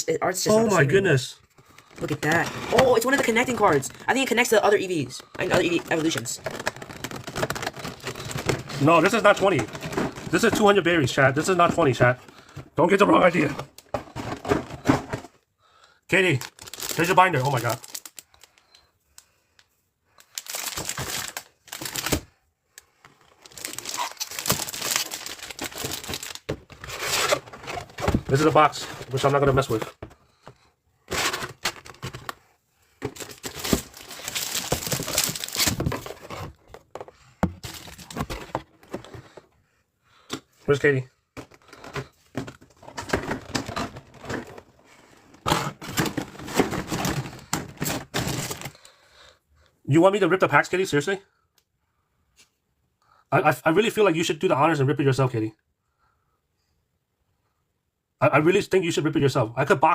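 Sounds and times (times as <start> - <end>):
cardboard and plastic rustling: 0.5 - 15.4, 16.1 - 18.7, 20.2 - 39.6, 40.3 - 49.0
packaging crinkling: 5.2 - 10.8, 16.2 - 18.6, 20.2 - 29.9, 33.0 - 36.5, 37.6 - 38.6, 45.4 - 48.9.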